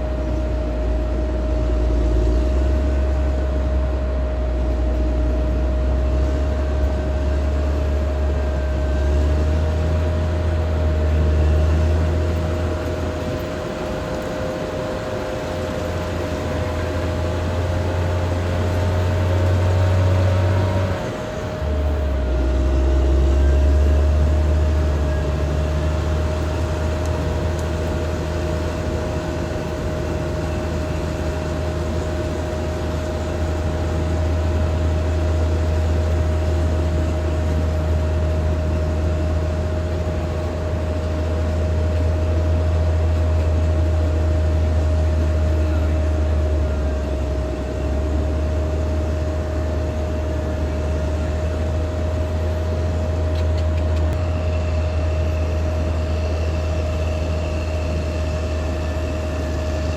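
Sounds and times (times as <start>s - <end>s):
bulldozer diesel engine rumbling: 0.0s - 59.9s
steady whine: 0.0s - 59.9s.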